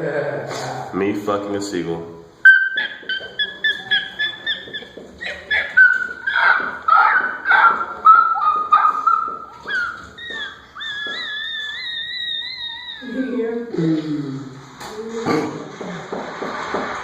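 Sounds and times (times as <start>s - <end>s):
man making yelping animal noises: 2.5s - 13.2s.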